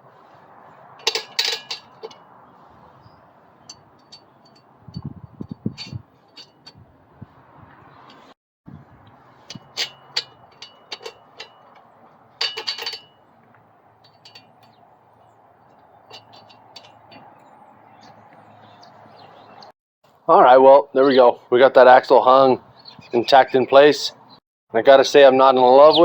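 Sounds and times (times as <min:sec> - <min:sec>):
metal tools clinking: 0:01.0 - 0:02.2, 0:05.8 - 0:06.8, 0:09.4 - 0:13.2, 0:14.0 - 0:14.8, 0:16.0 - 0:17.5.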